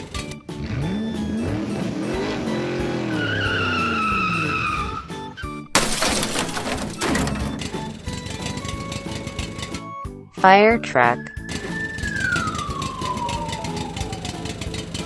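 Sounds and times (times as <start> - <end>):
vehicle engine revving: 0.0 - 5.1, 7.5 - 9.8, 11.4 - 15.0
background music: 0.0 - 15.0.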